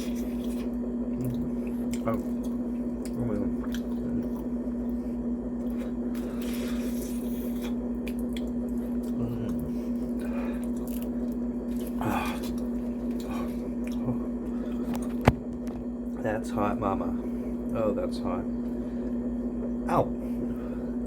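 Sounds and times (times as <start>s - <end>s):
wet chewing and squishing: 0.0s - 15.9s
low electrical hum: 0.0s - 21.0s.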